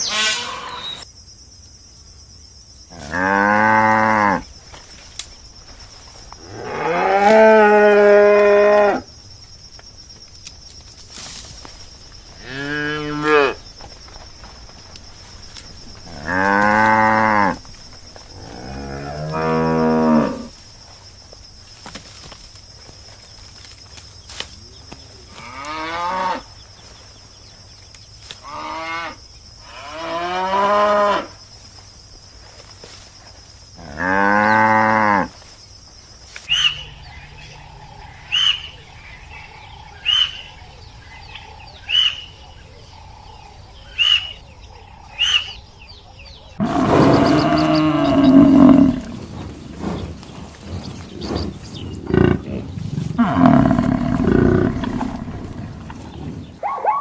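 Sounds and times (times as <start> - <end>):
short high calls: 0.0 - 1.0, 36.5 - 37.6
cows mooing: 6.4 - 9.0, 16.0 - 17.6, 18.4 - 20.5, 46.6 - 49.3, 52.0 - 56.3
loud long animal call: 36.5 - 49.2, 52.0 - 57.0.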